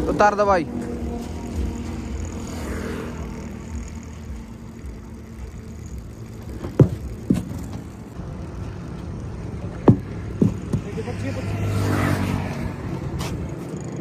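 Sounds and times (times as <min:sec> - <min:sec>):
diesel engine idling: 0:00.0 - 0:11.6
sharp knocks: 0:06.6 - 0:07.8, 0:09.8 - 0:11.0.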